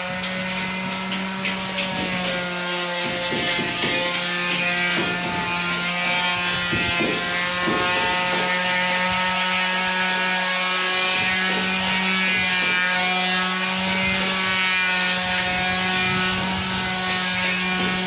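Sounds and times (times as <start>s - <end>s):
motor running steadily: 0.0s - 18.0s.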